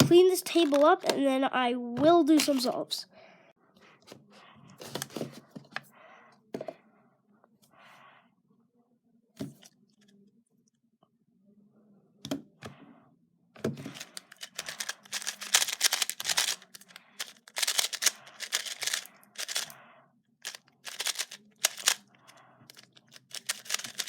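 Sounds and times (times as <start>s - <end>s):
puzzle cube plastic clicking: 0.6s - 1.2s, 13.8s - 19.8s, 20.4s - 24.0s.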